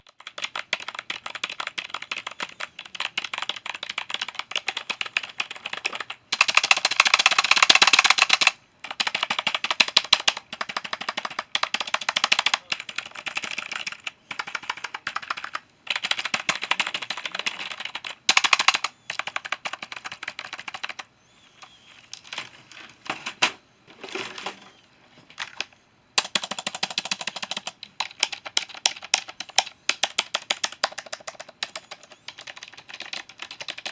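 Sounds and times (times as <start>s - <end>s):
fast typing on keyboard: 0.0s - 22.6s, 25.3s - 33.9s.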